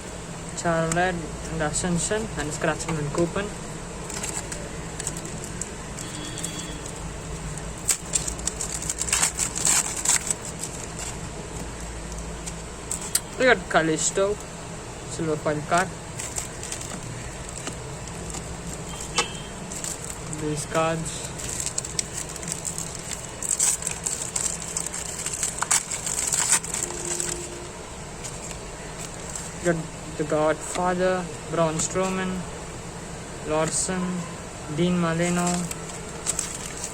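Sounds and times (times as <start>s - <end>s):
steady low hum: 0.0s - 36.9s
foil packet crinkling: 4.0s - 14.4s, 15.4s - 29.7s, 35.2s - 36.9s
cards rustling: 4.0s - 14.5s, 15.3s - 29.8s, 35.1s - 36.9s.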